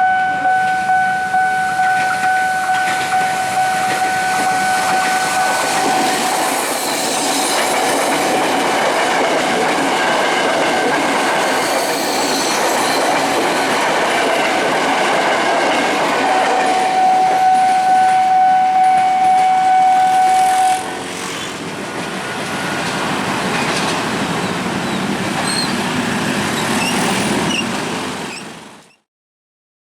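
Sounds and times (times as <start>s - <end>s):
train horn blast: 0.0s - 6.5s, 16.2s - 21.0s
train wheels clacking and squealing: 1.8s - 18.2s, 20.1s - 29.1s.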